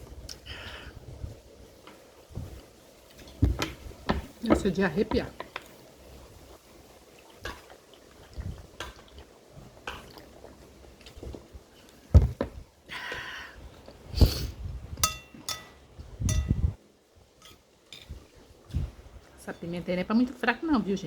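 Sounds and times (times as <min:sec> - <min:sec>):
chewing: 0:06.5 - 0:12.1
cutlery clinking on plate: 0:15.0 - 0:16.6.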